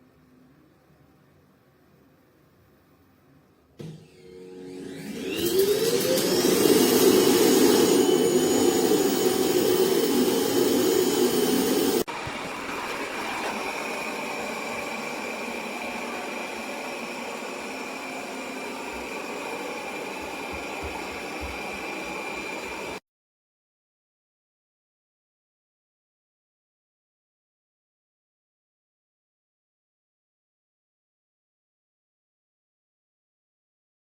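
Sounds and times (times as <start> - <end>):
robot vacuum suction motor whine: 3.8 - 23.0.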